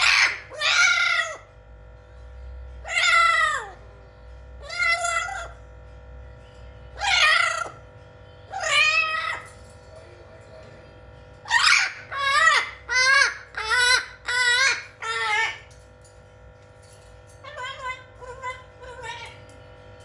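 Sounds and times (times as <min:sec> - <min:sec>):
parrot calling: 0:00.0 - 0:01.5, 0:02.8 - 0:03.8, 0:04.6 - 0:05.6, 0:07.0 - 0:07.8, 0:08.5 - 0:09.6, 0:11.4 - 0:15.8, 0:17.4 - 0:19.5.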